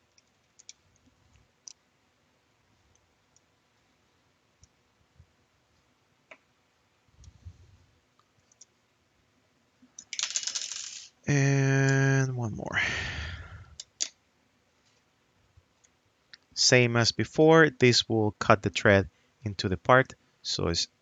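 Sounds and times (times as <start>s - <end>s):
soft rustle: 14.7s - 15.1s.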